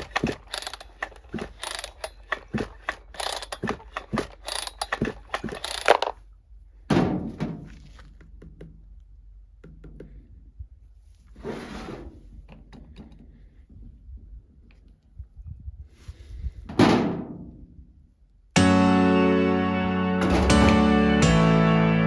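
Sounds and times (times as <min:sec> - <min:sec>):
parts and tools being handled: 0:00.0 - 0:06.3
loud thunk: 0:06.9 - 0:07.7, 0:16.7 - 0:17.5, 0:20.2 - 0:20.8
music with sustained chord: 0:18.6 - 0:22.0.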